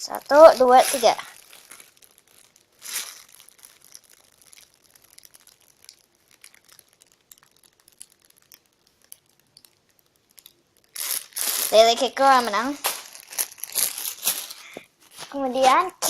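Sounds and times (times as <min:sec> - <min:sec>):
foam crinkling and ticking: 0:00.0 - 0:16.0.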